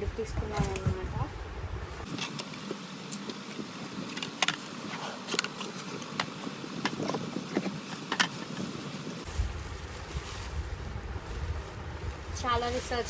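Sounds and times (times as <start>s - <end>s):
sharp clicks and light knocks: 4.1s - 4.7s.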